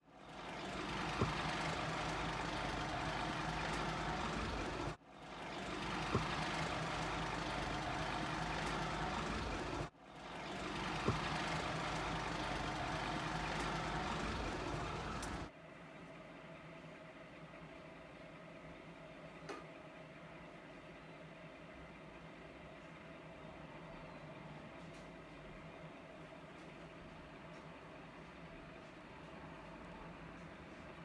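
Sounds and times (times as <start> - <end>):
truck engine idling: 0.2 - 15.5.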